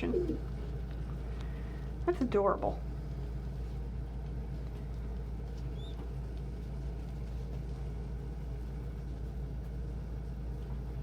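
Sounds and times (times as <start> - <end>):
faint hum: 0.0 - 11.0
low background rumble: 0.0 - 11.0
faint high chirp: 5.7 - 6.1.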